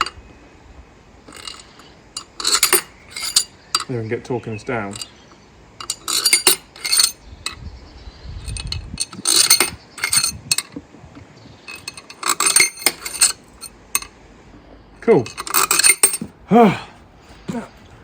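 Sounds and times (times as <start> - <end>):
metal tools clinking: 1.3 - 4.0, 4.8 - 7.6, 8.4 - 14.2, 15.0 - 16.4.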